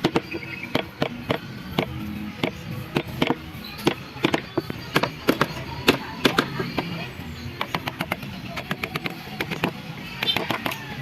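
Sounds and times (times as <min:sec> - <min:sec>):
mallet striking chisel into wood: 0:00.0 - 0:06.9
background music: 0:00.0 - 0:11.0.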